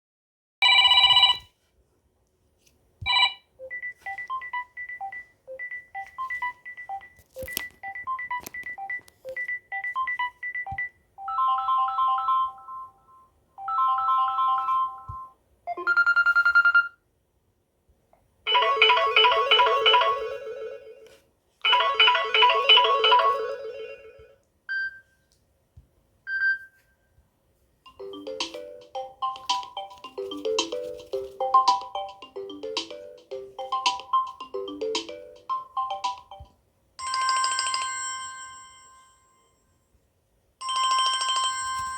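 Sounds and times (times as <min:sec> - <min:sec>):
phone ringtones: 0:00.6 - 0:01.5, 0:03.1 - 0:17.0, 0:18.5 - 0:21.0, 0:21.6 - 0:25.0, 0:27.9 - 0:38.9.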